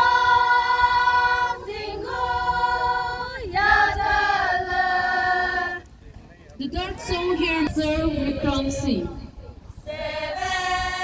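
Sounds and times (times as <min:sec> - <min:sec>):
choir singing long held notes: 0:00.0 - 0:05.8, 0:09.8 - 0:11.0.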